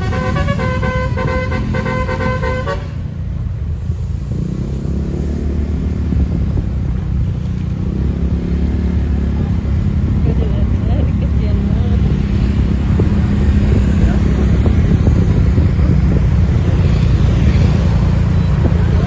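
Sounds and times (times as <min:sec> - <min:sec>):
bus melody horn playing a tune: 0:00.0 - 0:03.1
bus engine rumbling: 0:00.0 - 0:19.0.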